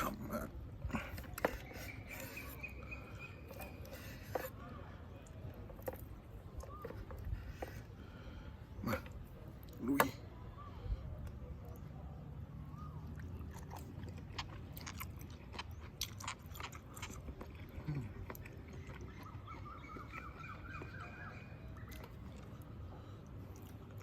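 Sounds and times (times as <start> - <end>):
person chewing food: 13.0 - 24.0.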